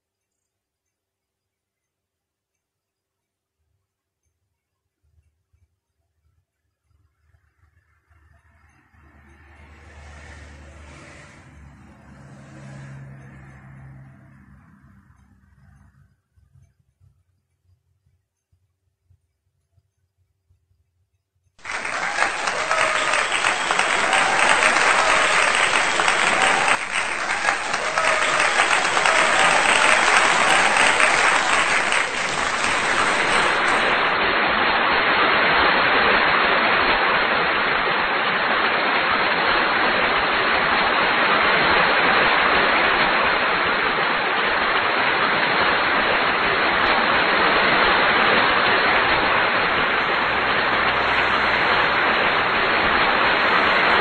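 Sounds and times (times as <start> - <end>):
blower rushing air: 21.6 - 54.0.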